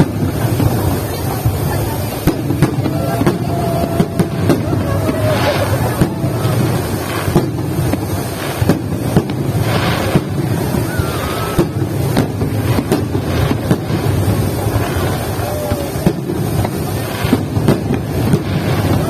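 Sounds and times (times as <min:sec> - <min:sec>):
fireworks bangs: 0:00.0 - 0:19.0.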